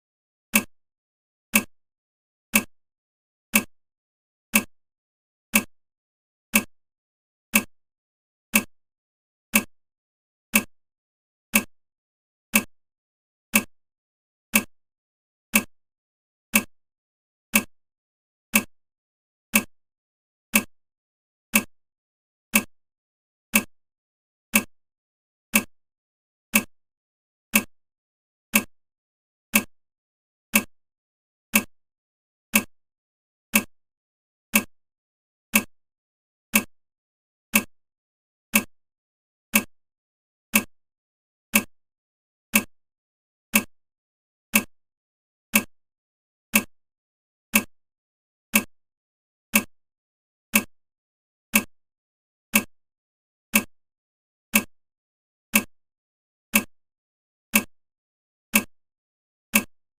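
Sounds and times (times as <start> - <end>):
timer ticking: 0.5 - 0.7, 1.5 - 1.7, 2.5 - 2.7, 3.5 - 3.7, 4.5 - 4.7, 5.5 - 5.7, 6.5 - 6.7, 7.5 - 7.7, 8.5 - 8.7, 9.5 - 9.7, 10.5 - 10.7, 11.5 - 11.7, 12.5 - 12.7, 13.5 - 13.7, 14.5 - 14.7, 15.5 - 15.7, 16.5 - 16.7, 17.5 - 17.7, 18.5 - 18.7, 19.5 - 19.7, 20.5 - 20.7, 21.5 - 21.7, 22.5 - 22.7, 23.5 - 23.7, 24.5 - 24.7, 25.5 - 25.7, 26.5 - 26.7, 27.5 - 27.7, 28.5 - 28.7, 29.5 - 29.7, 30.5 - 30.7, 31.5 - 31.7, 32.5 - 32.7, 33.5 - 33.7, 34.5 - 34.7, 35.5 - 35.7, 36.5 - 36.7, 37.5 - 37.7, 38.5 - 38.7, 39.5 - 39.7, 40.5 - 40.7, 41.5 - 41.7, 42.5 - 42.7, 43.5 - 43.7, 45.5 - 45.7, 46.5 - 46.7, 47.5 - 47.7, 48.5 - 48.7, 49.5 - 49.7, 50.5 - 50.7, 51.5 - 51.7, 52.5 - 52.7, 53.5 - 53.7, 54.5 - 54.7, 59.5 - 59.7.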